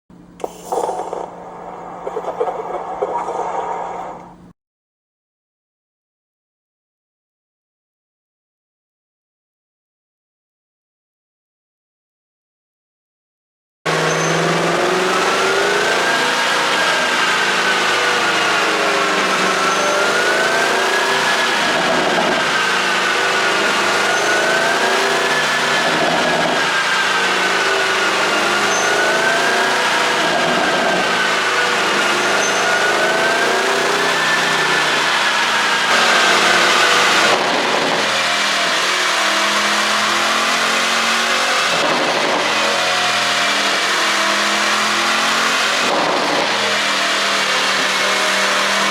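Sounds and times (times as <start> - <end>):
loud car engine running: 13.9 - 48.9.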